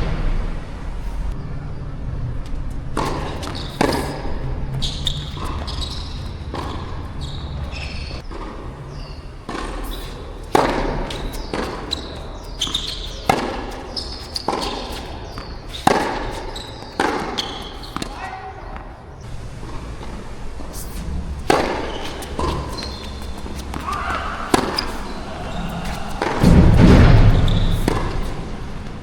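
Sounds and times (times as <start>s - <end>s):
tennis ball hits and bounces: 2.4s - 29.0s
wind on microphone: 24.3s - 29.0s.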